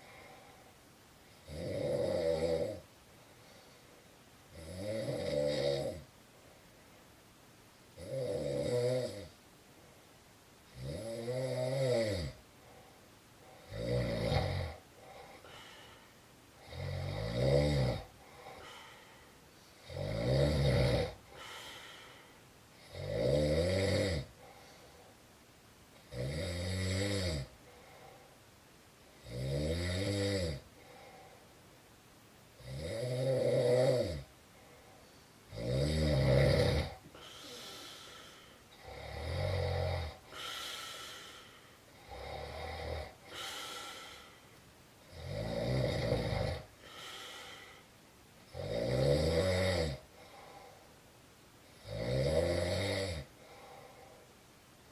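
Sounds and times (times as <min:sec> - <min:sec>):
loud snoring: 0:01.4 - 0:02.8, 0:04.5 - 0:06.1, 0:08.0 - 0:09.3, 0:10.7 - 0:12.4, 0:13.6 - 0:15.2, 0:16.6 - 0:18.8, 0:19.8 - 0:21.5, 0:22.8 - 0:24.4, 0:26.1 - 0:27.5, 0:29.2 - 0:30.6, 0:32.6 - 0:34.3, 0:35.5 - 0:44.3, 0:45.1 - 0:47.8, 0:48.5 - 0:50.2, 0:51.8 - 0:53.8
soft breath out: 0:15.0 - 0:16.3, 0:18.2 - 0:19.8, 0:37.1 - 0:38.7, 0:40.3 - 0:41.9, 0:46.8 - 0:48.0.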